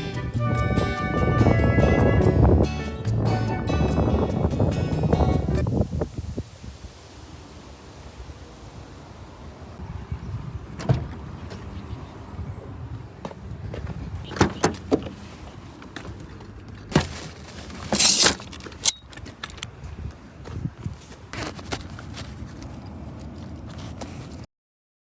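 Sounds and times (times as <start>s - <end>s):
wind rumble on microphone: 0.0s - 15.8s, 19.2s - 24.4s
camping gear knocks and clunks: 10.7s - 11.7s, 13.2s - 22.8s
rustling scrape: 16.9s - 19.4s, 20.9s - 22.8s, 23.6s - 24.4s.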